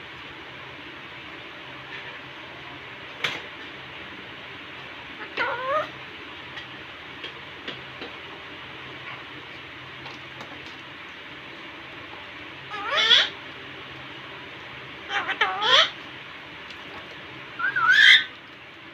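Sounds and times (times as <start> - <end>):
parrot squawking: 5.2 - 6.0, 12.7 - 13.4, 15.1 - 16.0, 17.6 - 18.3.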